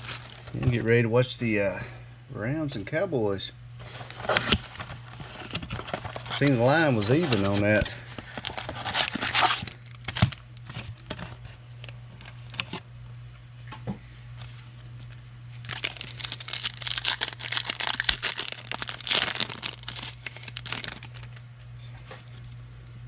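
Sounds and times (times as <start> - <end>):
foil wrapper tearing and crinkling: 0.0 - 0.5, 4.2 - 10.8, 15.6 - 21.4
cards handled: 3.9 - 11.3.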